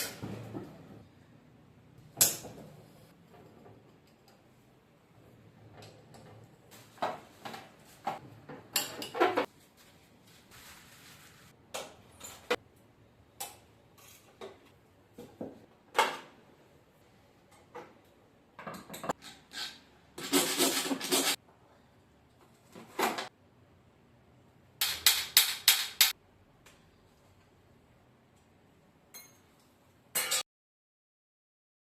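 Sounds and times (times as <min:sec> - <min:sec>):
metal tools clinking and scraping: 0:12.1 - 0:12.6.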